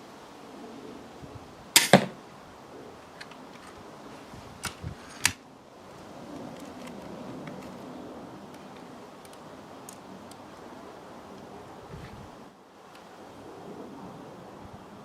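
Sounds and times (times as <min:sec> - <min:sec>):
crossbow string crack: 0:01.8 - 0:02.2
light clicks: 0:06.3 - 0:07.9, 0:08.5 - 0:10.5.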